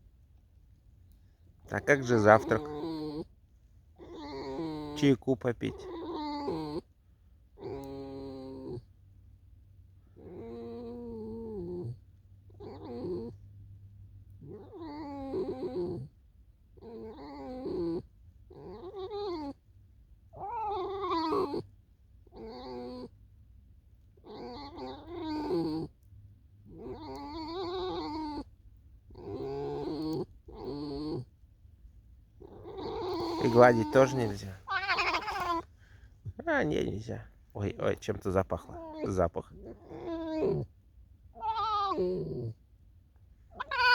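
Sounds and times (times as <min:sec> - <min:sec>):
fox whining calls: 0:01.7 - 0:03.3, 0:04.0 - 0:06.9, 0:07.6 - 0:08.8, 0:10.2 - 0:12.0, 0:12.6 - 0:13.4, 0:14.4 - 0:16.1, 0:16.8 - 0:19.6, 0:20.3 - 0:21.7, 0:22.3 - 0:23.1, 0:24.2 - 0:26.0, 0:26.6 - 0:28.5, 0:29.1 - 0:31.3, 0:32.4 - 0:36.0, 0:37.8 - 0:42.6, 0:43.5 - 0:43.9.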